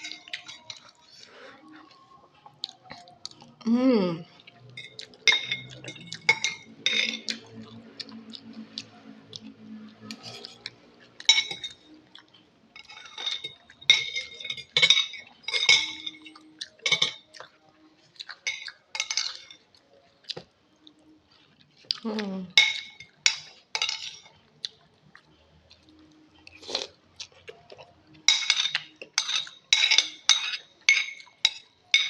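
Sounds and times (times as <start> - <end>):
cutlery clinking against bowl: 0.0 - 1.0, 4.7 - 7.5, 10.1 - 12.0, 12.8 - 17.6, 18.2 - 19.7, 22.5 - 24.4, 28.2 - 32.0.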